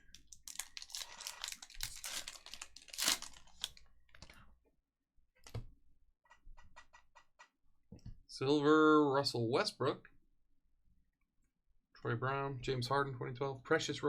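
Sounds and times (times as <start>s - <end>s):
foil pack tearing and crinkling: 0.3s - 4.3s.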